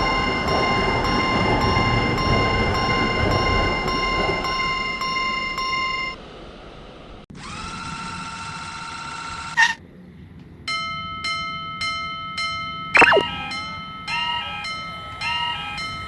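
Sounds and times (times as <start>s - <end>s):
railroad crossing bells: 0.0s - 6.1s, 10.7s - 12.9s, 13.6s - 16.0s.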